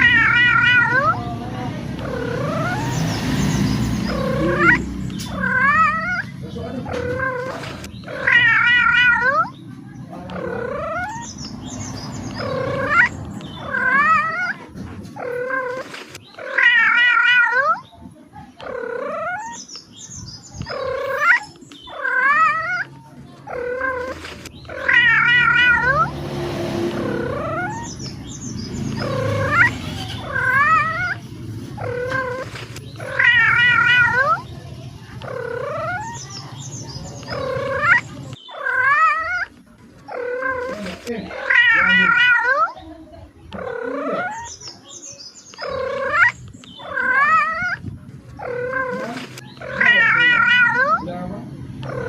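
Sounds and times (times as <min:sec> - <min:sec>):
cat meowing and yowling: 0:00.0 - 0:01.2, 0:04.0 - 0:06.3, 0:06.9 - 0:09.5, 0:12.4 - 0:14.6, 0:16.4 - 0:17.8, 0:20.6 - 0:22.9, 0:23.5 - 0:26.1, 0:27.0 - 0:28.0, 0:29.0 - 0:31.2, 0:31.8 - 0:34.4, 0:37.2 - 0:39.5, 0:41.4 - 0:42.8, 0:45.6 - 0:47.8, 0:48.4 - 0:51.2.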